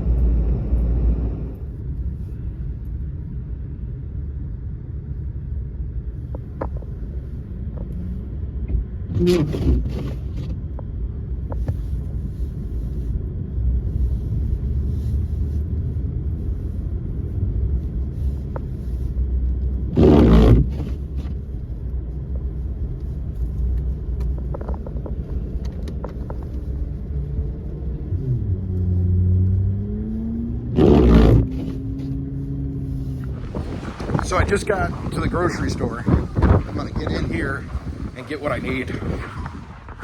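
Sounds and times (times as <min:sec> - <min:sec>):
car road and engine rumble: 0:00.0 - 0:40.0.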